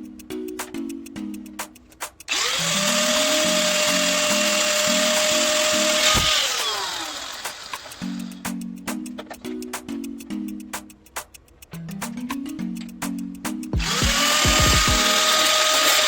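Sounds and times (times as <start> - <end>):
power tool motor whine: 2.3 - 8.0, 13.8 - 16.0.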